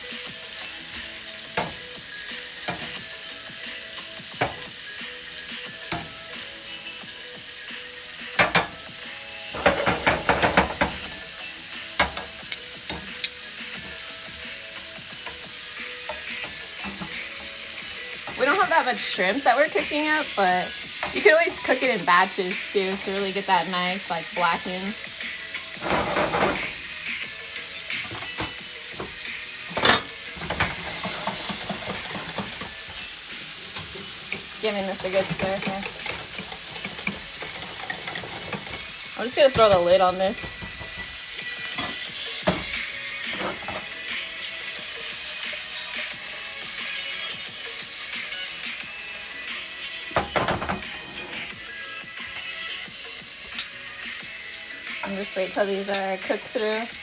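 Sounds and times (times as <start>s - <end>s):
shrimp sizzling in a pan: 0.0s - 57.0s
utensil clacking against pan: 8.3s - 8.9s, 9.6s - 11.3s, 12.0s - 14.0s, 15.0s - 19.2s, 28.0s - 33.1s, 33.7s - 44.0s
utensil clinking against pan: 29.7s - 32.6s.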